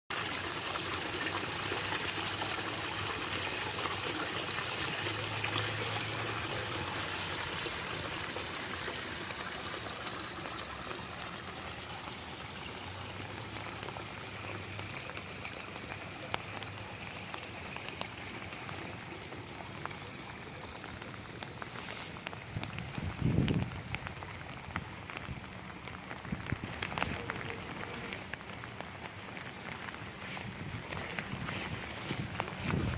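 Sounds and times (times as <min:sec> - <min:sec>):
rainwater pouring and trickling: 0:00.1 - 0:32.9
water drips: 0:00.1 - 0:32.9.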